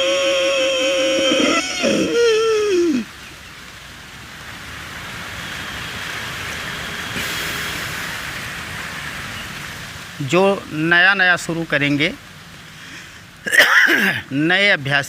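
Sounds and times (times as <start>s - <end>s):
hissing throat breathing: 0.0s - 3.1s.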